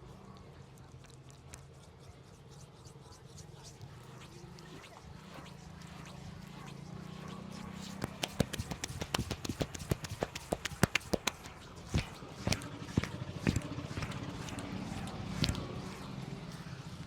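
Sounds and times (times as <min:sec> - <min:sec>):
hands clapping and tapping head: 0:08.0 - 0:15.8.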